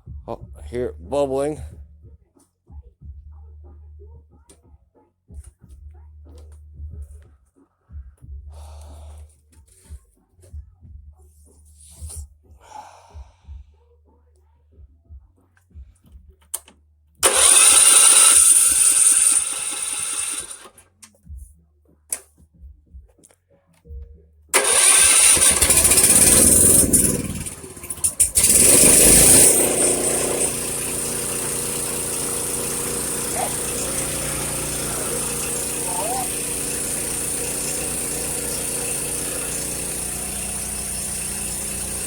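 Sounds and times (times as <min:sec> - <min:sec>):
small gas engine running: 0:17.2 - 0:20.8, 0:24.6 - 0:42.0.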